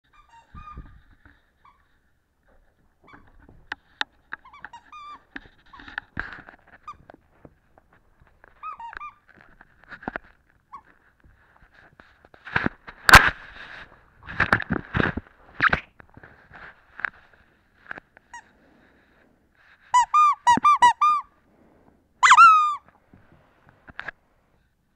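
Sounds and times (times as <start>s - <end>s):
animal squeaks and cries: 0.1s - 2.0s, 4.4s - 6.0s, 8.6s - 9.3s, 19.9s - 21.4s, 22.2s - 22.9s.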